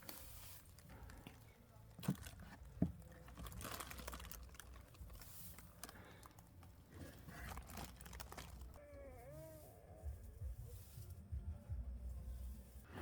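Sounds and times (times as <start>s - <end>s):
handling clicks and crackling: 0.8s - 8.8s
wavering pitched call: 8.8s - 10.2s.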